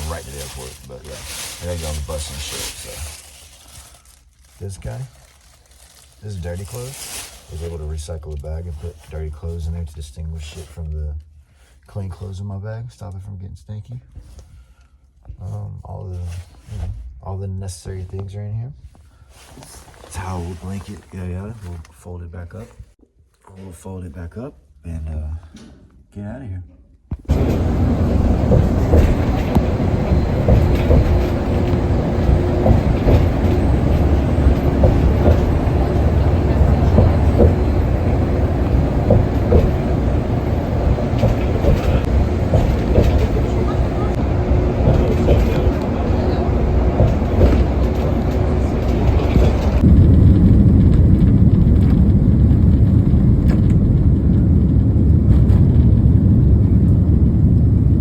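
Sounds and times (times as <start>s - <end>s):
subway train rumbling: 0.0s - 3.8s, 27.3s - 58.0s
wheels clicking on track: 27.3s - 49.9s.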